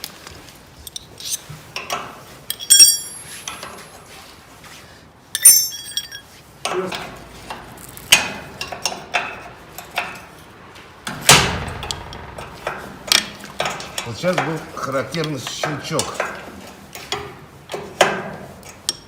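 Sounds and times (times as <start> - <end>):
metal tool clicks and knocks: 0.9 - 3.9, 5.4 - 7.1
metal clink: 2.5 - 4.0, 5.4 - 6.3.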